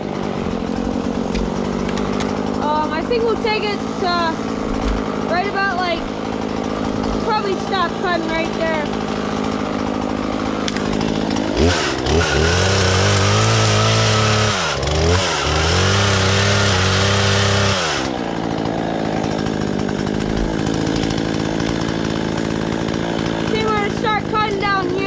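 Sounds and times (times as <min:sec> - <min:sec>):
chainsaw idling and revving: 0:00.0 - 0:25.0.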